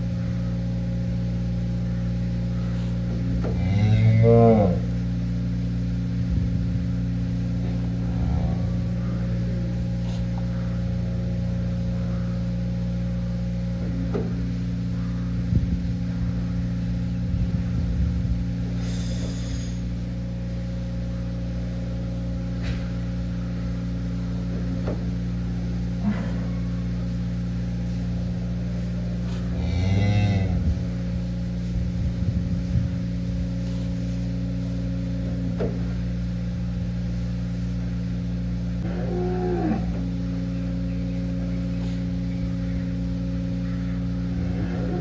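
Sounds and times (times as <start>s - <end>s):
low mechanical hum: 0.0s - 45.0s
cow mooing: 3.4s - 5.0s, 29.2s - 31.0s, 38.8s - 40.1s, 44.3s - 45.0s.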